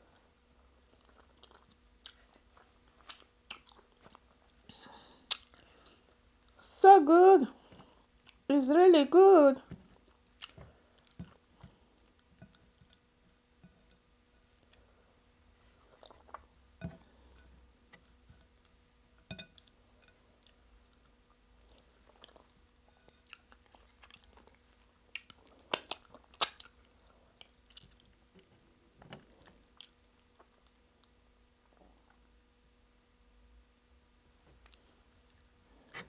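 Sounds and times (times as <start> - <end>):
person chewing: 0.8 - 5.9, 10.0 - 14.8, 15.7 - 17.6, 23.2 - 28.4
wet mouth smacks and clicks: 5.3 - 5.6, 25.7 - 26.7.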